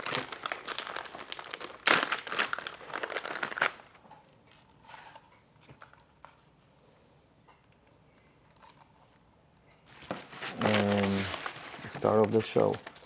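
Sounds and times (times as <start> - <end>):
plastic packaging crinkling: 0.0 - 4.0, 9.9 - 13.0.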